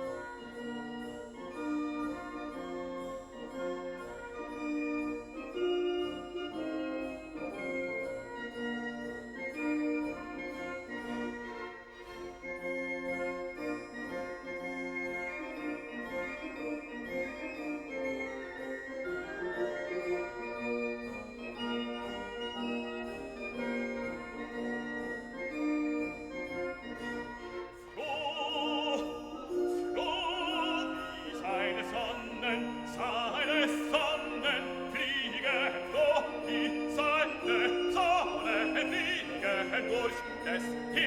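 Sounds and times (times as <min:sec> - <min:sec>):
held accompaniment notes: 0:00.0 - 0:41.0
operatic singing with vibrato: 0:27.2 - 0:41.0.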